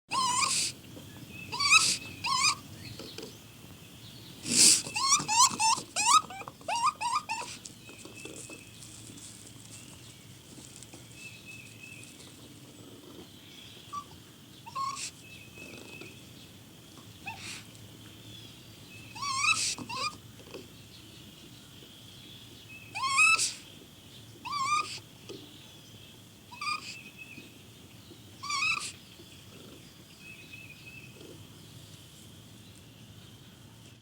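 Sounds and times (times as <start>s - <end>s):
raccoon whimpering cries: 0.1s - 0.8s, 1.4s - 2.7s, 4.4s - 7.7s, 13.9s - 16.1s, 17.2s - 17.7s, 19.1s - 20.2s, 22.9s - 23.6s, 24.4s - 25.0s, 26.5s - 27.1s, 28.4s - 29.0s.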